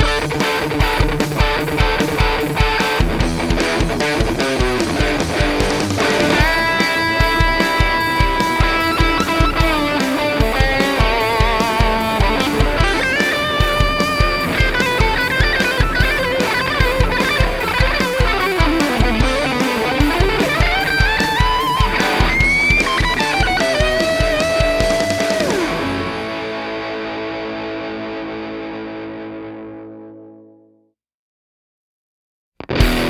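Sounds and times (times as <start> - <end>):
distorted electric guitar lead: 0.0 - 30.6, 32.6 - 33.0.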